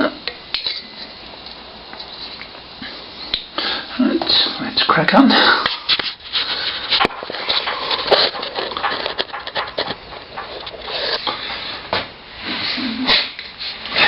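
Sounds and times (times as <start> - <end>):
rustling: 5.7 - 14.0.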